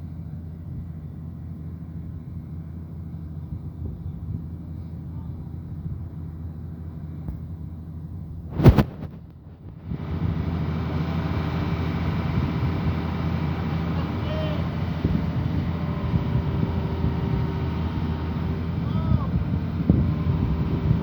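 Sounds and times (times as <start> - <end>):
excavator diesel engine running: 9.5 - 21.0.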